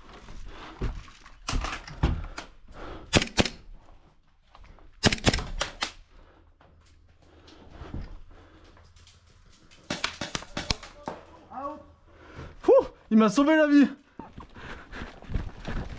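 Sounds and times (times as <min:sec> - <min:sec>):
airsoft gun shots: 0:05.0 - 0:05.9.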